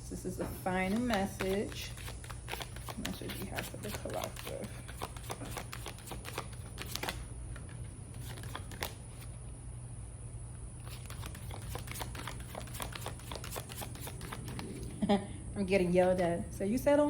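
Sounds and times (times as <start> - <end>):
steady low hum: 0.0 - 17.0
cards shuffling: 0.6 - 9.3, 10.8 - 15.0.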